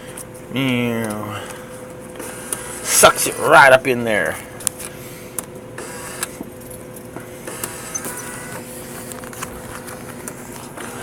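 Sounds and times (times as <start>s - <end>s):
vending machine hum: 0.0s - 11.0s
brief whirring tone: 7.7s - 8.6s.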